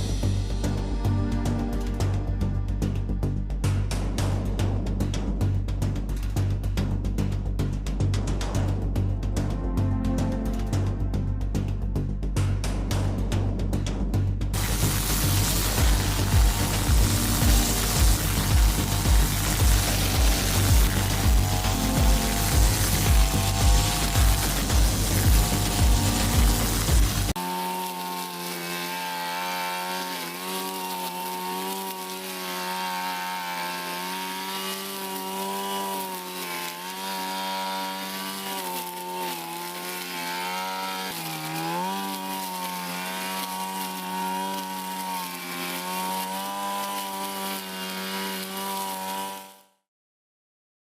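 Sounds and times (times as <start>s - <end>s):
music: 0.0s - 27.4s, 28.3s - 49.3s
brush cutter engine buzzing: 14.6s - 49.8s.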